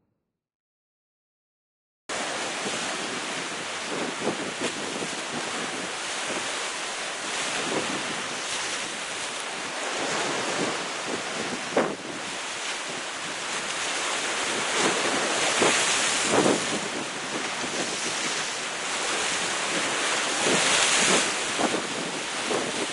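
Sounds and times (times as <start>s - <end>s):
waves breaking against rocks: 2.1s - 22.9s.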